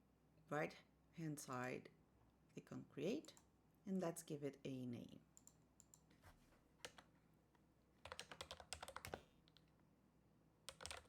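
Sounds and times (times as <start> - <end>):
typing on computer keyboard: 6.8 - 7.1, 8.0 - 9.7, 10.7 - 11.0.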